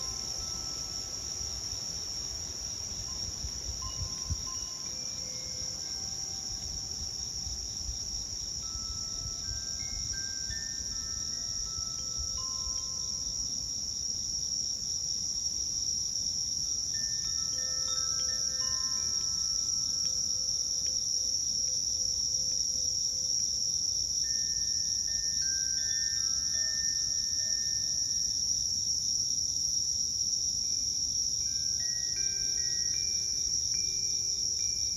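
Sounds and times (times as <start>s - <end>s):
wind chime notes ringing: 0.0s - 13.6s, 16.9s - 21.1s, 24.2s - 28.0s, 31.4s - 34.9s
high insect chorus: 0.0s - 34.9s.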